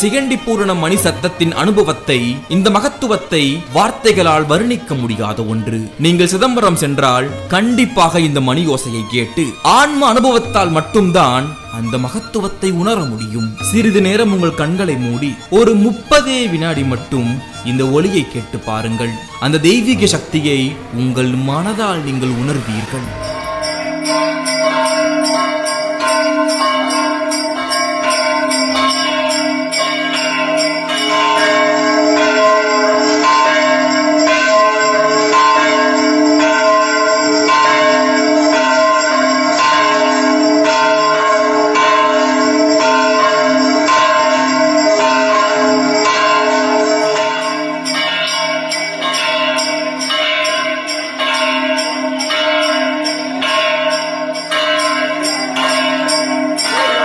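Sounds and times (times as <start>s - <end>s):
large temple bell ringing: 0.0s - 57.0s.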